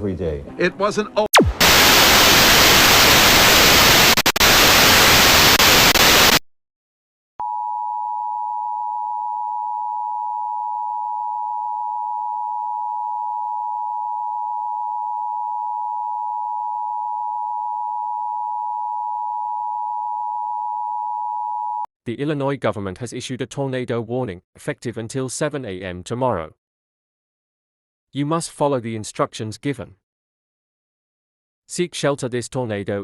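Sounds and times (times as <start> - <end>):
steady alert tone: 1.3 - 2.0
harsh static noise: 1.4 - 6.4.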